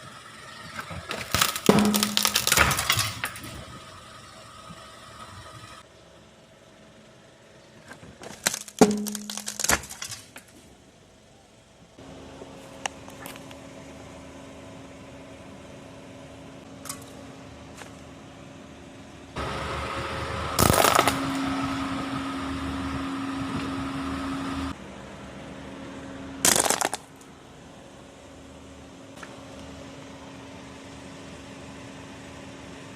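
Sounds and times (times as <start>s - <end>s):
plastic and glass cracking: 1.1s - 3.5s, 8.2s - 10.6s, 20.6s - 21.2s, 26.5s - 27.0s.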